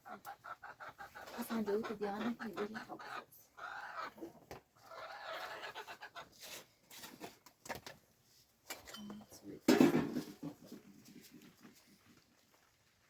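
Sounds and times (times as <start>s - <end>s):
chickens calling: 0.0s - 6.6s.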